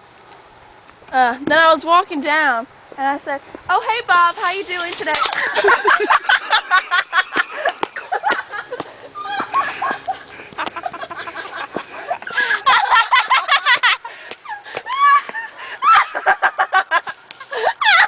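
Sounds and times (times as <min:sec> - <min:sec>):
people laughing hard: 0:05.2 - 0:18.0.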